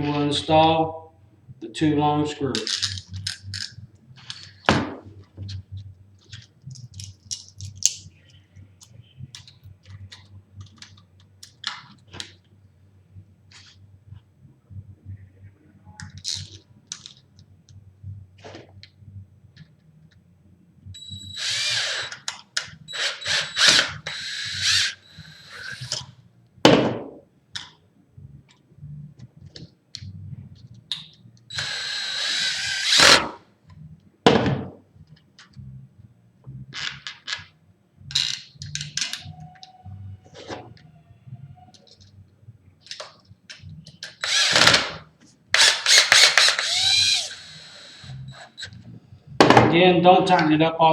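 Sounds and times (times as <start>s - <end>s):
cordless drill driving screws: 21.2s - 22.3s, 22.9s - 26.0s, 31.5s - 33.4s, 44.1s - 45.0s, 45.6s - 48.7s.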